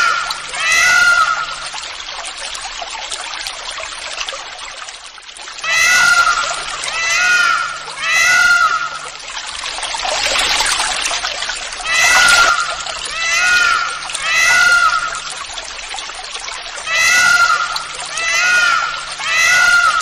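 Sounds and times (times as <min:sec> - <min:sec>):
peacock wailing calls: 0:00.0 - 0:01.6, 0:05.6 - 0:09.1, 0:11.8 - 0:15.3, 0:16.8 - 0:20.0
rain and running water hiss: 0:00.0 - 0:20.0.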